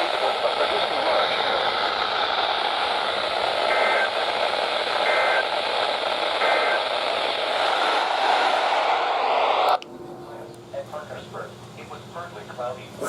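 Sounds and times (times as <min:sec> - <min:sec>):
radio hiss and static: 0:00.0 - 0:13.0
two-tone data bursts: 0:03.6 - 0:07.1.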